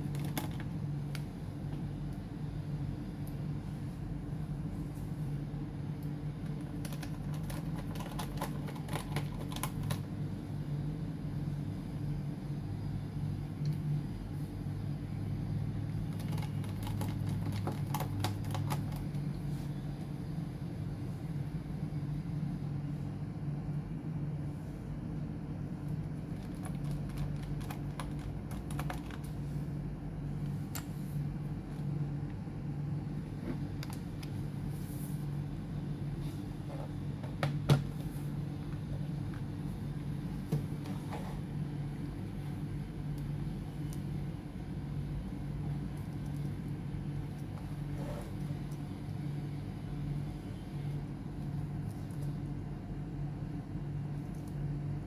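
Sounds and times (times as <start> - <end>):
steady low hum: 0.0 - 55.0
laptop parts clicking and tapping: 6.6 - 10.1, 16.1 - 19.2, 26.4 - 29.4.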